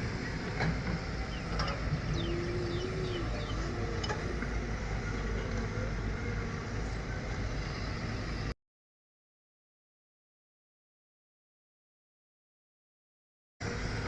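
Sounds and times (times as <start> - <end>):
heavy machinery diesel rumble: 0.0 - 8.5.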